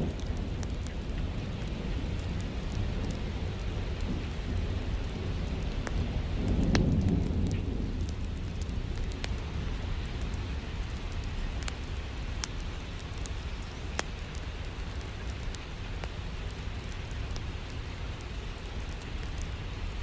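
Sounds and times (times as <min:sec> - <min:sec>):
low rumble of thunder: 0:00.0 - 0:14.0
fireplace fire crackling: 0:00.0 - 0:20.0
steady rain: 0:00.0 - 0:20.0.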